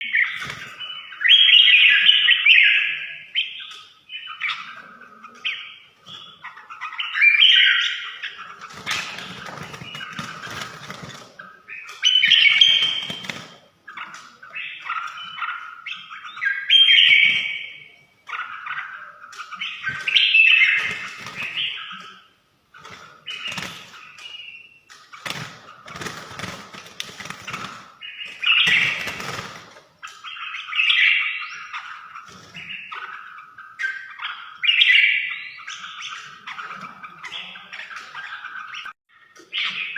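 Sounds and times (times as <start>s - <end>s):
rustling: 8.5s - 11.5s.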